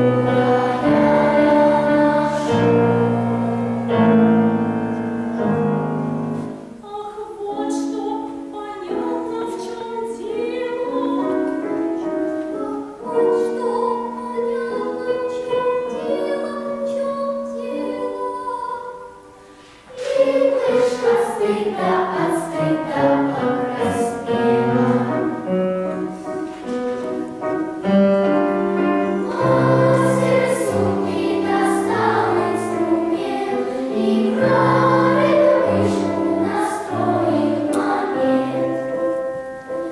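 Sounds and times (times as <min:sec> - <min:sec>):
children's choir singing: 0:00.0 - 0:39.9
piano accompaniment: 0:00.0 - 0:39.9.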